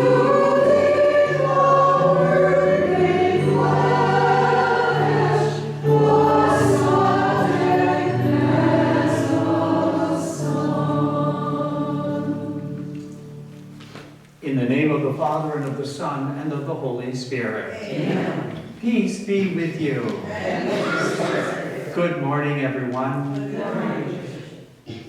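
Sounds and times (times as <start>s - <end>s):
group singing a hymn: 0.0s - 13.7s, 17.8s - 18.7s, 19.8s - 22.0s, 23.4s - 24.8s.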